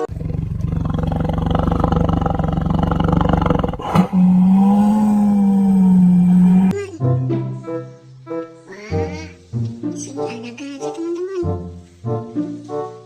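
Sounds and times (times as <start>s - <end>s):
deep rough animal roar: 0.0s - 6.8s.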